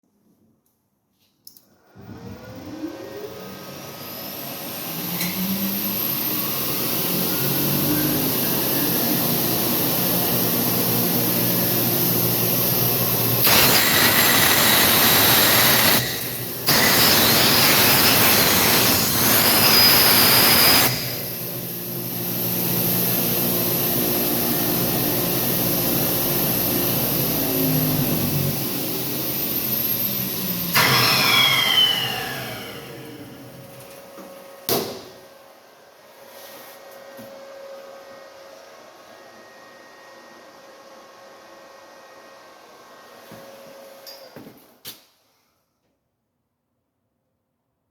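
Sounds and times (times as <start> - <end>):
vacuum turbine whining: 1.9 - 36.0.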